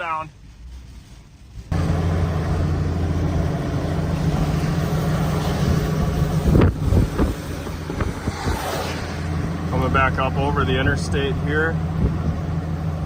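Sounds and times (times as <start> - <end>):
low vehicle drone: 1.4 - 13.0
wind gust thumps: 1.7 - 10.3
wind buffeting microphone: 3.4 - 13.0.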